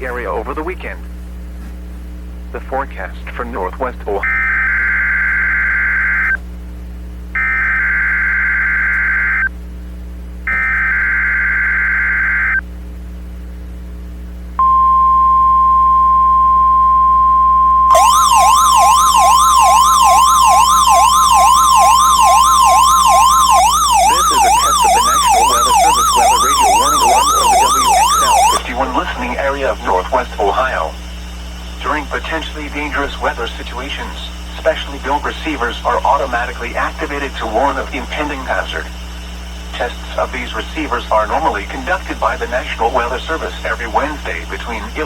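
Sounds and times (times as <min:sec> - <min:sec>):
steady alarm tone: 0:04.2 - 0:06.4, 0:07.3 - 0:09.5, 0:10.5 - 0:12.6, 0:14.6 - 0:33.8
warbling siren: 0:04.2 - 0:06.4, 0:07.4 - 0:09.5, 0:10.5 - 0:12.6, 0:14.6 - 0:30.9
digital data tone bursts: 0:14.6 - 0:31.0.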